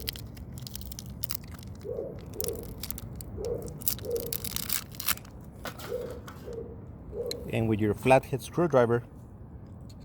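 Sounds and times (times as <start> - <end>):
crinkling and clicking handling: 0.0 - 6.6
bird cooing: 1.8 - 2.6, 3.4 - 4.4, 5.8 - 7.5.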